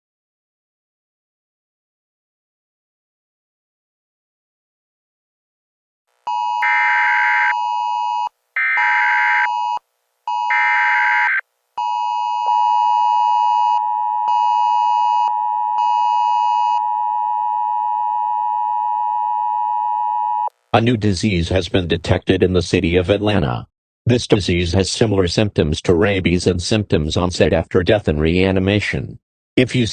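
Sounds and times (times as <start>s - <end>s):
long attention tone: 6.3s - 20.5s.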